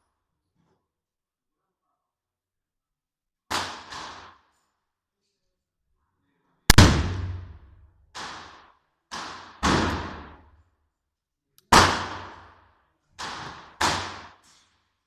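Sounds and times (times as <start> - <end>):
revolver shots with echo: 6.7 - 8.4.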